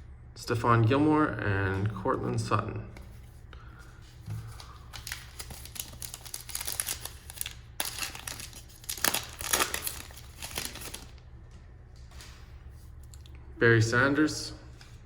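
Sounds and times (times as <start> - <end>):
foil wrapper crinkling and tearing: 4.5 - 11.2.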